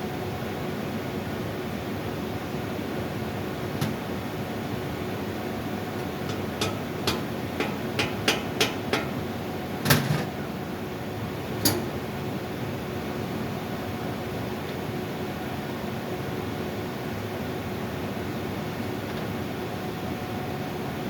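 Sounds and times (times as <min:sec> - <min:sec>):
steady background hum: 0:00.0 - 0:21.0
hammer taps: 0:06.0 - 0:09.2.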